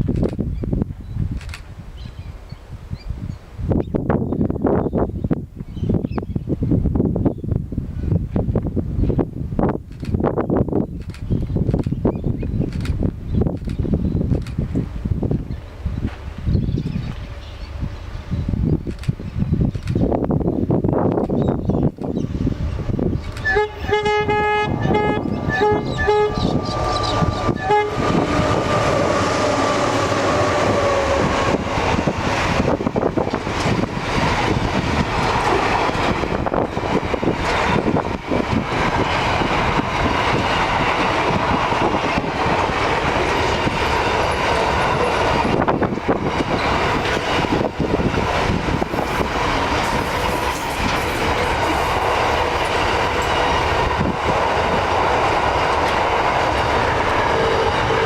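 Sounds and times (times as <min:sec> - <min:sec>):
wagons rumbling on rails: 0:08.0 - 0:58.0
locomotives passing: 0:21.8 - 0:58.0
locomotive horn blasts: 0:23.4 - 0:31.6, 0:57.3 - 0:58.0.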